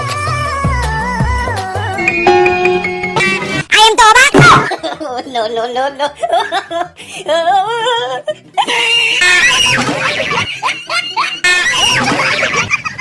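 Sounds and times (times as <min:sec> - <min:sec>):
music: 0:00.0 - 0:13.0
short squealing cries: 0:08.8 - 0:10.0.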